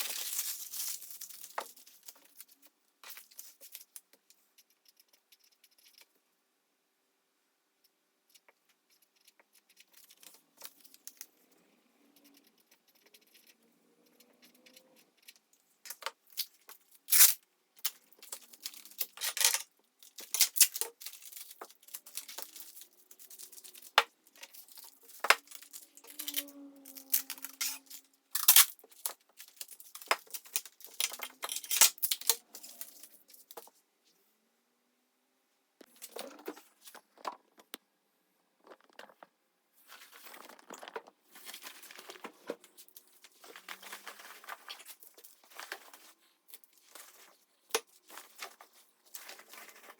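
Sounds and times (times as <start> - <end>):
plastic packaging crinkling: 0.0 - 2.5.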